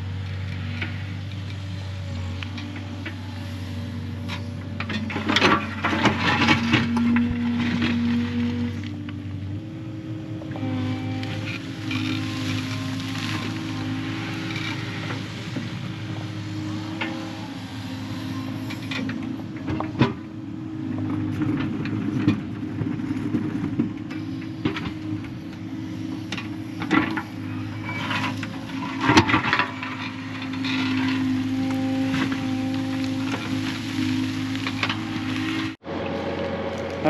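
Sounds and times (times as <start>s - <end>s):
excavator diesel engine running: 0.0s - 37.0s
excavator bucket knocking and scraping: 4.1s - 9.3s, 18.2s - 35.4s.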